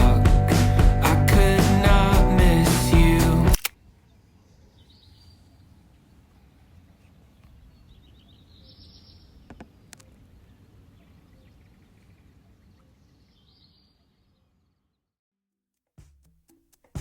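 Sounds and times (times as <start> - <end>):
sharp clicks: 3.5 - 3.8.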